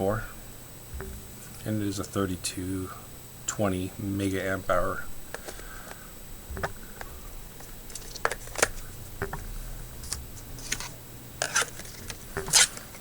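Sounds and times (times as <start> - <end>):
plastic clicks and taps: 5.3 - 7.1.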